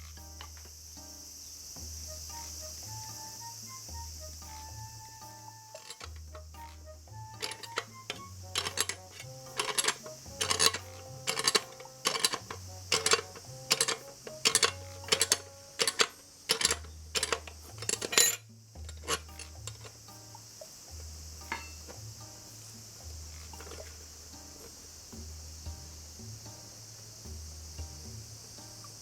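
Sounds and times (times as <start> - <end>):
bass line music: 0.0 - 29.0
sharp clinking strikes: 21.4 - 22.6.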